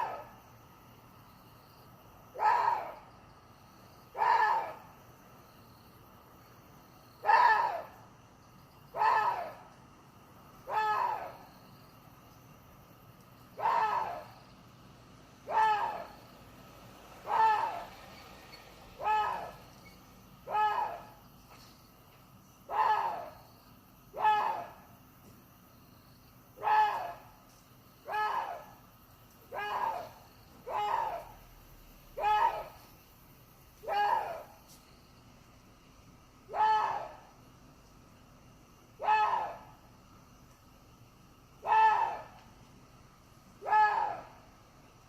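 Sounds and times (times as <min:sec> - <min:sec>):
deer harsh screams: 0:13.6 - 0:14.3, 0:15.5 - 0:16.2, 0:17.2 - 0:17.9, 0:19.0 - 0:19.6, 0:20.4 - 0:21.1, 0:29.5 - 0:31.4, 0:41.6 - 0:42.3, 0:43.6 - 0:44.3.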